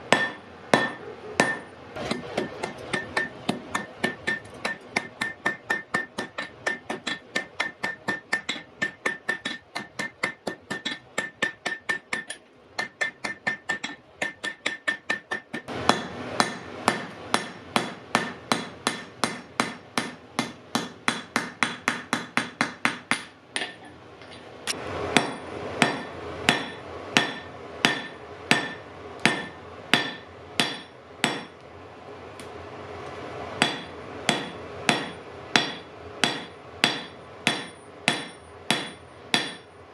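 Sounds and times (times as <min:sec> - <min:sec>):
hammer ringing on anvil: 0:00.1 - 0:23.9, 0:25.2 - 0:31.5, 0:33.6 - 0:39.7.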